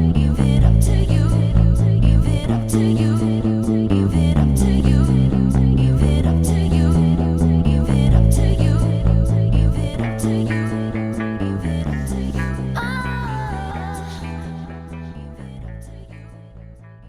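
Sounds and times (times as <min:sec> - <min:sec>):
background music with bass and guitar: 0:00.0 - 0:17.0.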